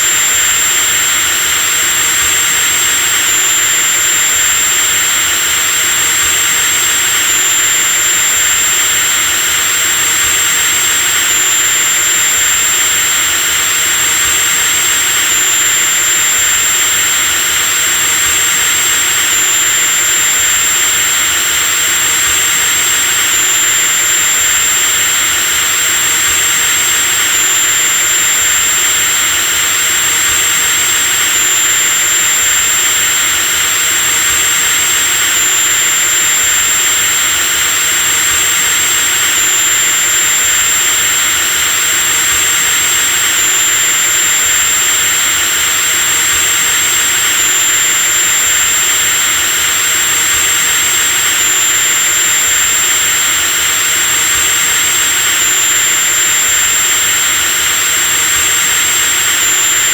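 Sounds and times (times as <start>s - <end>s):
electric drill motor whining: 0.0s - 59.9s.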